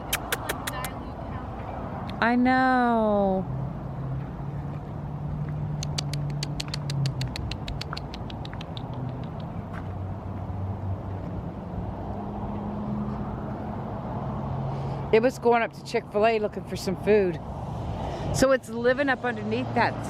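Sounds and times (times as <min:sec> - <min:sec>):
sharp clicks: 0:00.0 - 0:00.9, 0:05.8 - 0:09.6.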